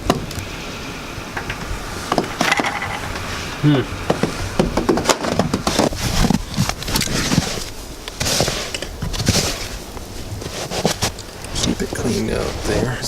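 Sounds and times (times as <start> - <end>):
footsteps crunching in snow: 4.1 - 13.0.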